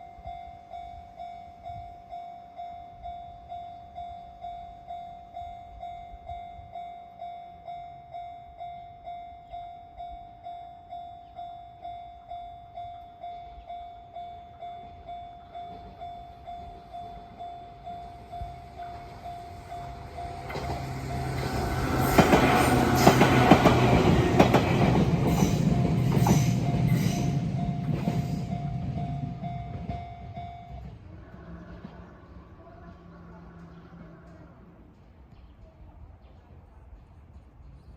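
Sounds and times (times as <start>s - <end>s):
level crossing warning bell dinging: 0.0s - 31.1s
electric train passing: 0.0s - 37.8s
wheels clacking over rail joints: 17.2s - 35.3s.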